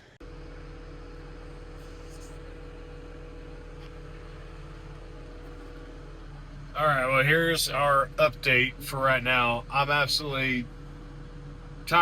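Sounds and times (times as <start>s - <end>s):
vehicle engine idling: 0.0s - 12.0s.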